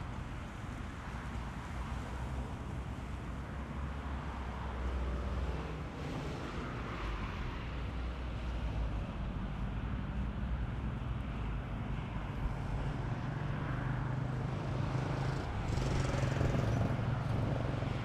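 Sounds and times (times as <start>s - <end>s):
wind buffeting microphone: 14.6s - 18.0s.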